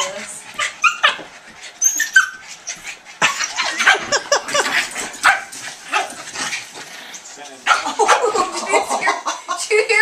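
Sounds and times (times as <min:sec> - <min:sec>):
dog yipping and barking: 0:00.6 - 0:01.2, 0:01.8 - 0:02.4.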